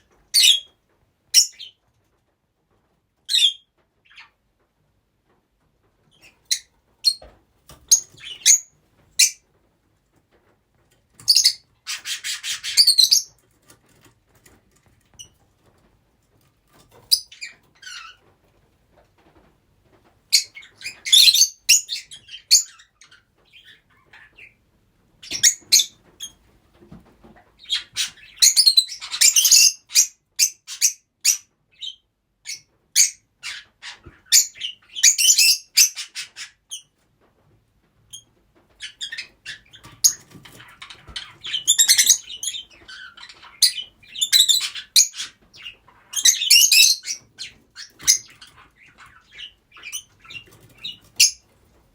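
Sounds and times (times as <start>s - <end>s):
lovebirds chirping: 1.3s - 1.8s, 7.8s - 9.4s, 11.2s - 13.4s, 20.3s - 24.6s, 25.2s - 26.4s, 27.6s - 36.9s, 38.8s - 51.5s.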